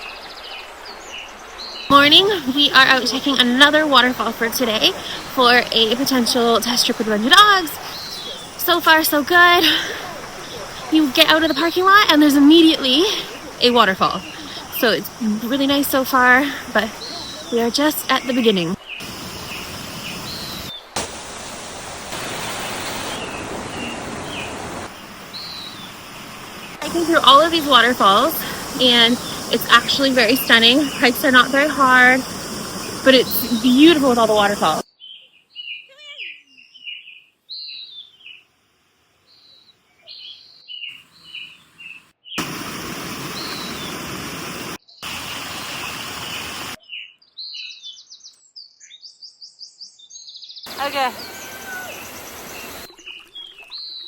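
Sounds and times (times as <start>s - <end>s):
bird chirps: 0.0s - 21.0s, 22.6s - 38.5s, 39.3s - 44.1s, 44.8s - 54.0s
waterfall rushing: 1.6s - 34.8s, 41.0s - 46.8s, 50.7s - 52.9s.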